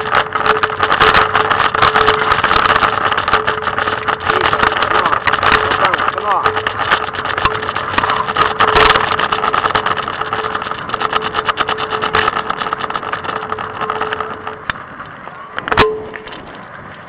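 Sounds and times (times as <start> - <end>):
scooter wheels rolling on pavement: 0.0 - 17.0.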